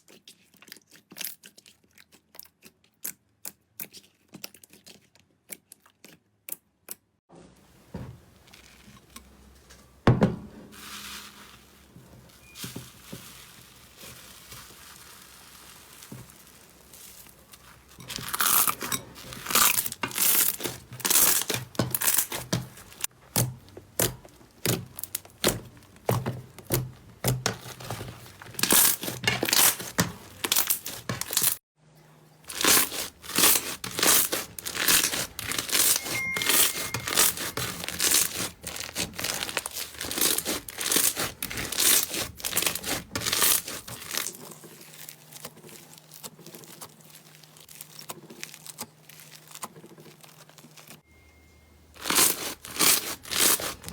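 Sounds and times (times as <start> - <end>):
slime squishing and popping: 32.6 - 50.5.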